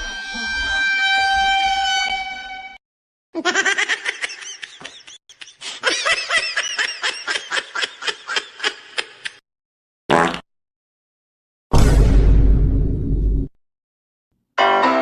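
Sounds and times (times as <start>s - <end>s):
high-pitched snickering laugh: 3.4s - 9.4s.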